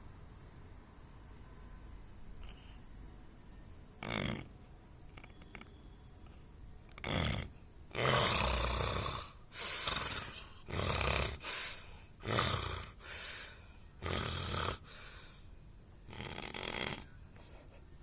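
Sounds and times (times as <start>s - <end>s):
person snoring: 7.0s - 15.4s, 16.1s - 17.1s.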